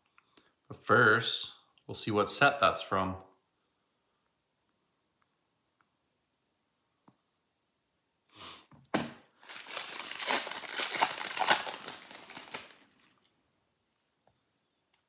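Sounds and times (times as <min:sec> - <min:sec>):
plastic wrapping crinkling: 0:09.4 - 0:13.3.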